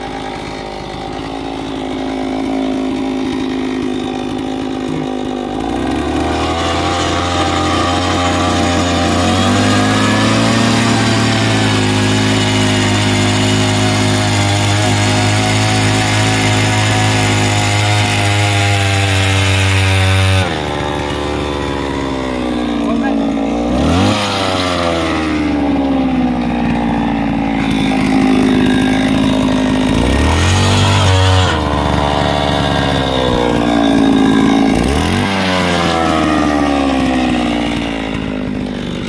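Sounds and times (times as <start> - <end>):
small engine humming: 0.0 - 39.0.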